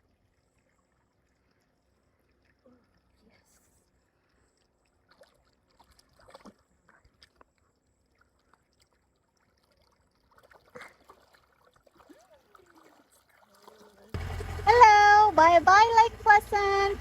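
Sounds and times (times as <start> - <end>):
lake water splashing: 0.0 - 17.0.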